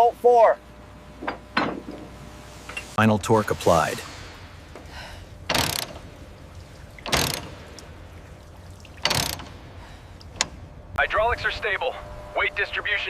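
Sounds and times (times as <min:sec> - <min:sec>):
low steady hum: 0:00.0 - 0:13.0
wrench rattling tightening bolts: 0:05.5 - 0:06.0, 0:07.0 - 0:07.6, 0:09.0 - 0:09.6.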